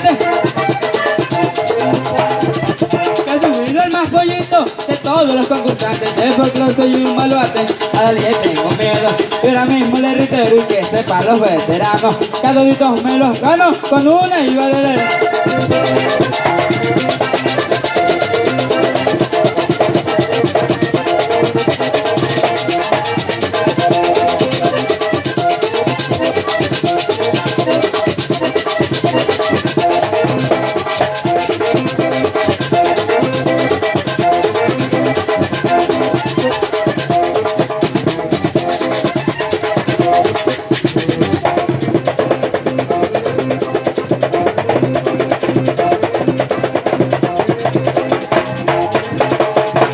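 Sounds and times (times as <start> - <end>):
drum beat: 0.0 - 49.9
fast accordion melody: 0.0 - 49.9
scraper rhythm: 0.0 - 49.9.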